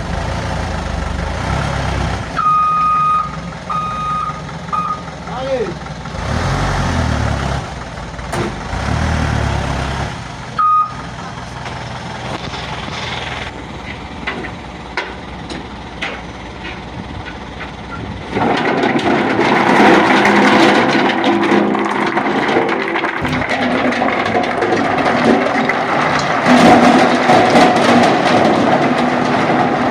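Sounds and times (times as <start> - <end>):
diesel truck engine running: 0.0 - 29.9
short high beep: 10.6 - 11.0.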